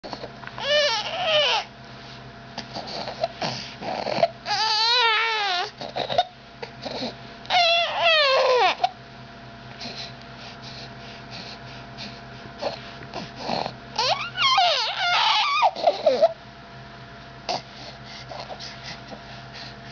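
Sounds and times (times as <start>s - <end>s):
baby crying: 0.6s - 1.7s, 3.9s - 6.3s, 6.9s - 8.9s, 13.4s - 16.4s.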